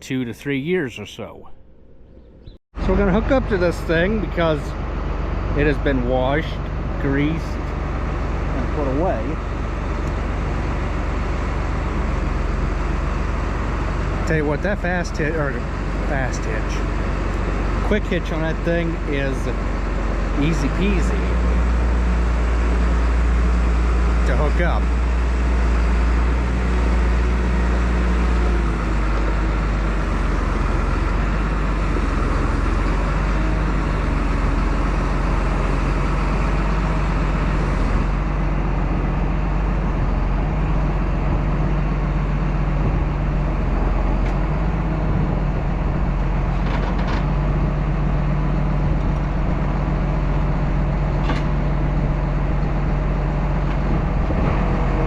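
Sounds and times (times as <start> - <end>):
tractor diesel engine running: 0.0 - 55.0.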